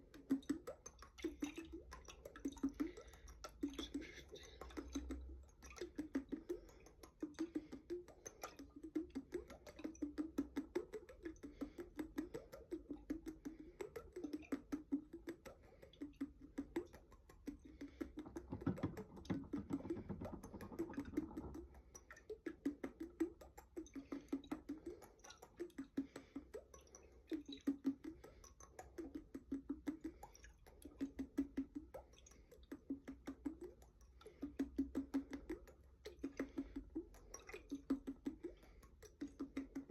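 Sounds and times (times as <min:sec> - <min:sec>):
light taps on glass jar: 0:16.0 - 0:22.2.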